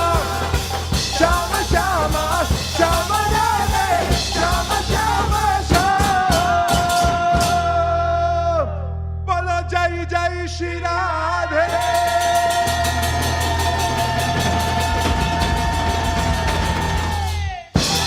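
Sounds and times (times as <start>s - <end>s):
drums: 0.0s - 7.9s, 11.6s - 18.0s
low bass: 0.0s - 17.5s
person singing melody: 0.0s - 18.0s.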